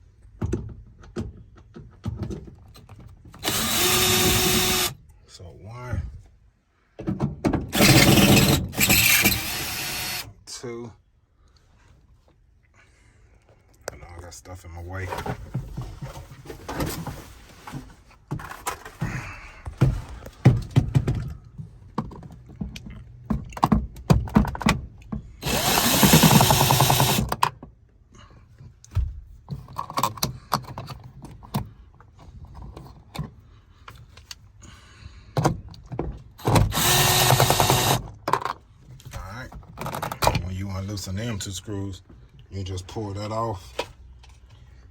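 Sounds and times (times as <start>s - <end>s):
power drill running: 3.4s - 5.0s, 7.7s - 10.3s, 25.4s - 27.3s, 36.4s - 38.0s.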